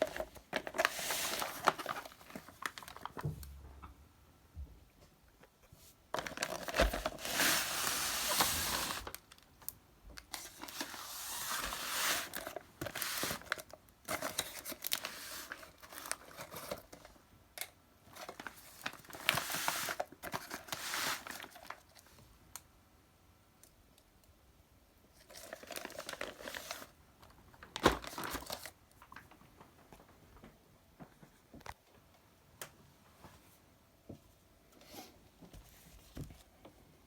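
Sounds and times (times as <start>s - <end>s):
packaging crinkling: 0.0s - 3.2s, 6.1s - 9.5s, 10.2s - 17.1s, 18.1s - 22.1s, 25.3s - 29.5s.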